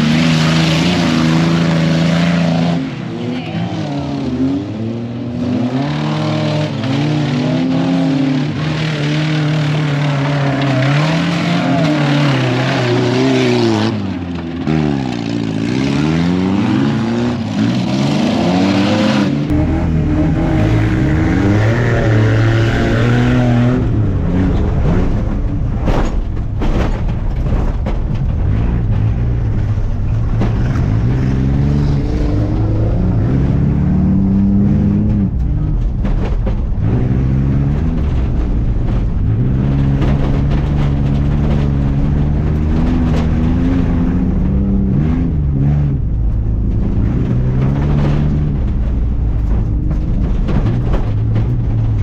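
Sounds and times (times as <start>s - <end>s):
truck engines revving: 0.0s - 52.0s
heavy low rumble: 19.3s - 52.0s.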